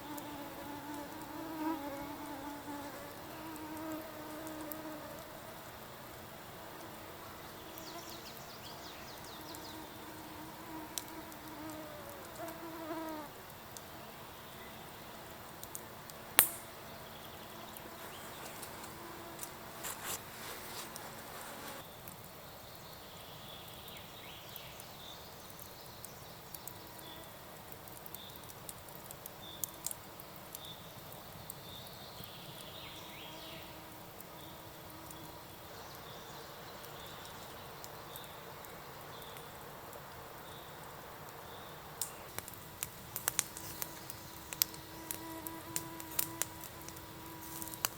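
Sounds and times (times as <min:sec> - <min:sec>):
fly buzzing: 0:00.0 - 0:05.6, 0:09.5 - 0:13.3, 0:17.5 - 0:21.8, 0:42.2 - 0:47.9
sharp snap: 0:16.4 - 0:16.7.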